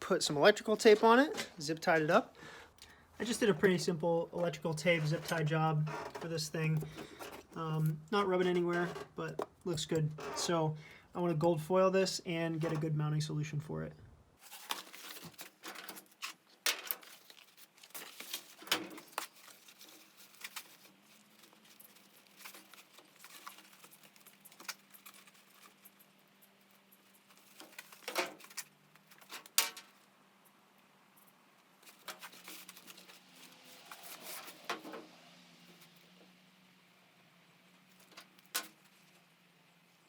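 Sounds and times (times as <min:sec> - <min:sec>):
tape crinkling: 0:14.4 - 0:30.0, 0:31.8 - 0:34.7
hands handling small parts: 0:14.4 - 0:30.1.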